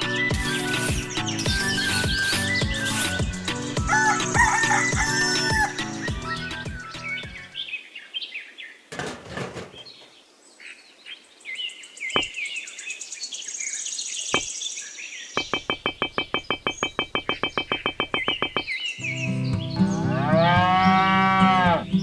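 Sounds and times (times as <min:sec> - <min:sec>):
songbirds chirping and twittering: 0:00.0 - 0:22.0
sharp knocks: 0:08.9 - 0:09.9, 0:15.4 - 0:18.8.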